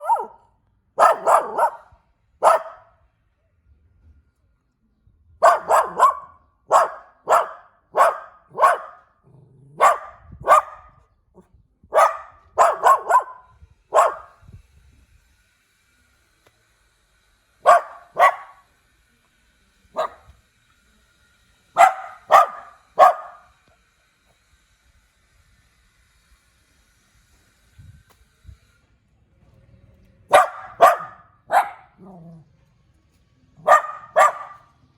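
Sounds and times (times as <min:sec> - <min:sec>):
puppy yapping: 0:00.0 - 0:00.4, 0:01.0 - 0:02.9, 0:05.4 - 0:09.1, 0:09.8 - 0:10.9, 0:12.0 - 0:14.3, 0:17.7 - 0:18.6, 0:20.0 - 0:20.3, 0:21.8 - 0:23.4, 0:30.3 - 0:32.4, 0:33.6 - 0:34.7.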